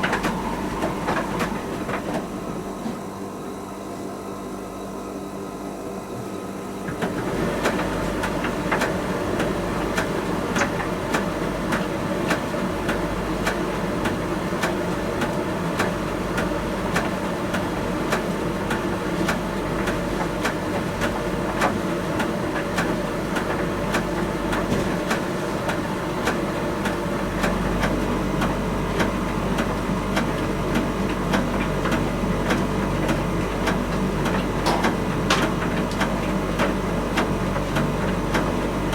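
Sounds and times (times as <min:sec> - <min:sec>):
tumble dryer humming: 0:00.0 - 0:04.7.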